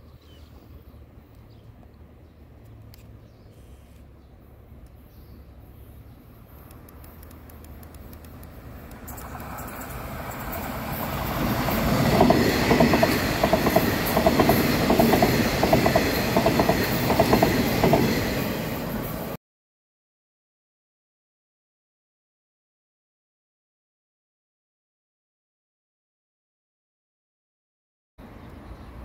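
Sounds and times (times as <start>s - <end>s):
electric train passing: 6.4s - 19.4s
train wheels clacking over rail joints: 8.9s - 19.2s.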